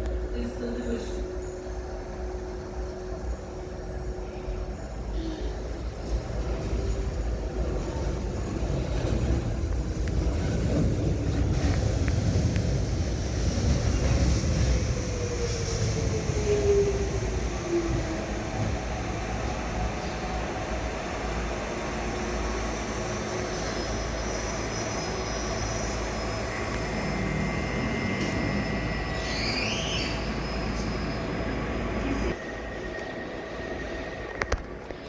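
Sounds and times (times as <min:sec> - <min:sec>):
train rumbling on track: 0:00.0 - 0:35.0
high wheel squeal: 0:23.6 - 0:31.8.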